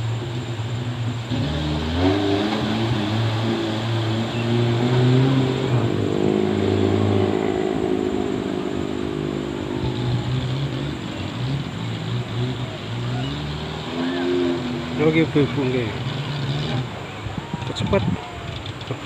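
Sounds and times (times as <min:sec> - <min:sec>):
jeep engine revving under load: 0:01.1 - 0:17.1.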